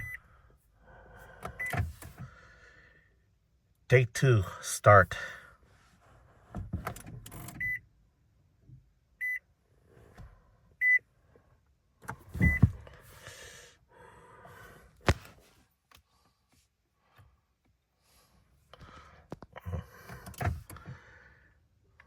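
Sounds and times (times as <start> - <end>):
car warning chime beeps: 0.0 - 0.2, 1.6 - 1.8, 7.6 - 7.9, 9.2 - 9.4, 10.8 - 11.0, 12.4 - 12.7
clicks and rustling of controls: 12.0 - 13.0.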